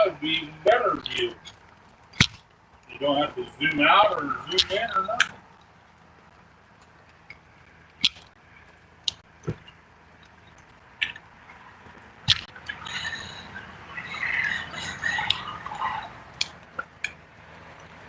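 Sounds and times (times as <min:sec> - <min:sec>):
sharp clicks: 0:04.4 - 0:13.0
squawking chirping bird calls: 0:12.3 - 0:17.1.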